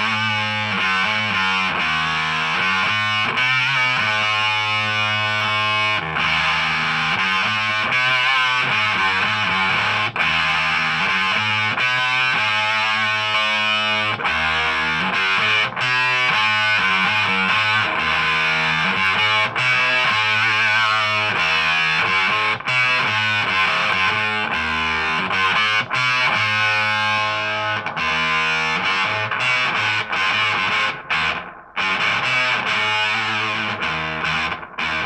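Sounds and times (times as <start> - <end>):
distorted electric guitar: 0.0 - 35.0.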